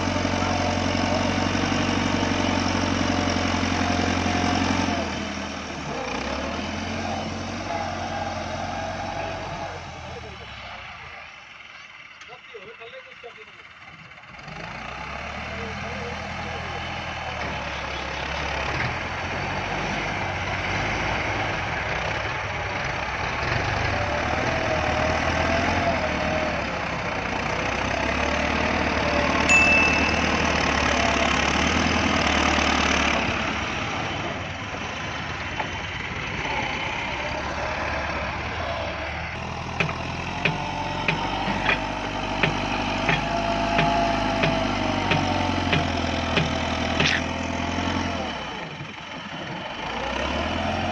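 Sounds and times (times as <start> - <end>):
tractor diesel engine running: 0.0 - 50.9
high ding: 29.5 - 30.9.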